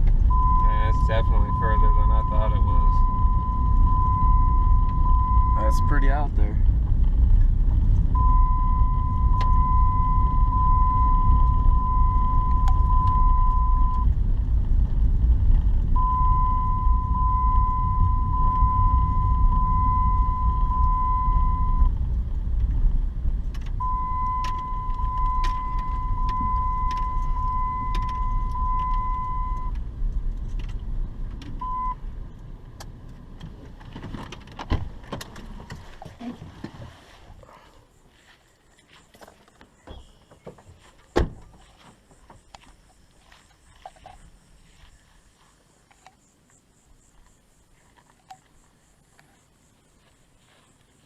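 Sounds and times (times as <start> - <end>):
vehicle driving rumble: 0.0 - 51.0
seatbelt warning chime beeping: 0.3 - 6.2, 8.2 - 14.1, 16.0 - 21.9, 23.8 - 29.8.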